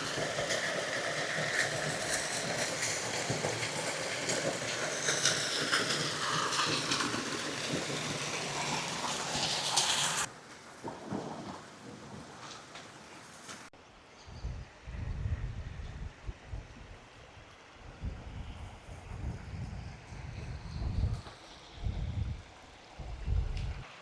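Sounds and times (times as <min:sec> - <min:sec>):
waterfall rushing and splashing: 0:00.0 - 0:10.3
quiet outdoor background: 0:13.0 - 0:24.0.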